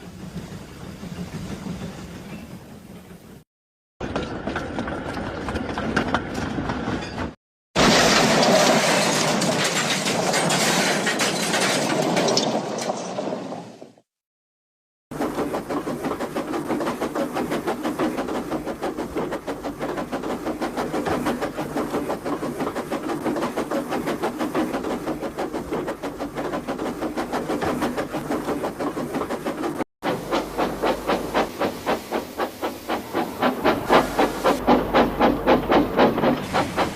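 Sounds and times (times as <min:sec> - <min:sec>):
steam locomotive chuffing: 0:00.0 - 0:03.4, 0:15.1 - 0:36.9.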